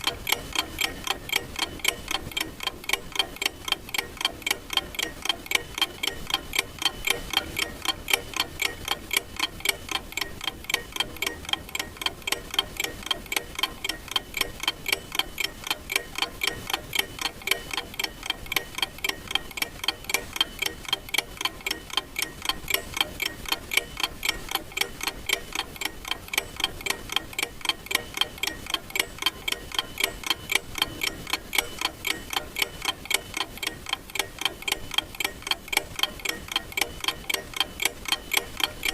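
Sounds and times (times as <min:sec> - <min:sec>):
clock ticking: 0:00.0 - 0:38.9.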